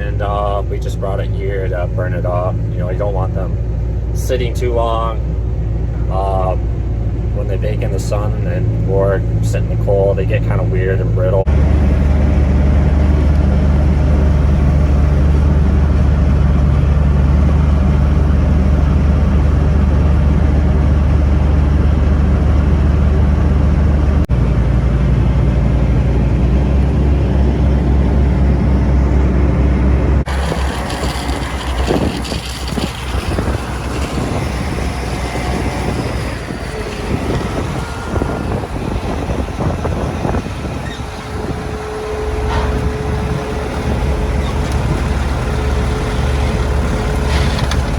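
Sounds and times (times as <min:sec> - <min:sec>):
diesel machinery engine drone: 0:00.0 - 0:47.9
metal clanks and rattles: 0:30.3 - 0:47.9.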